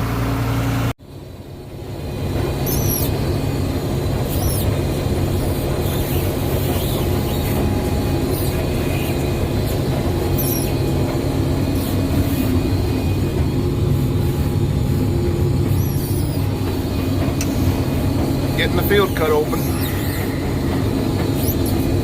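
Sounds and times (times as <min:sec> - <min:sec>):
combine harvester running: 0:00.0 - 0:22.0
faint high squeaks: 0:02.6 - 0:03.2, 0:04.3 - 0:04.8, 0:08.3 - 0:10.9, 0:15.6 - 0:16.6, 0:19.0 - 0:22.0.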